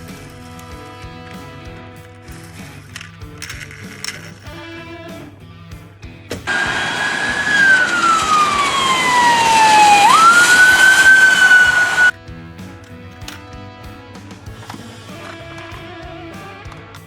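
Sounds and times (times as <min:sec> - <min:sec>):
siren wailing: 0:06.5 - 0:12.1.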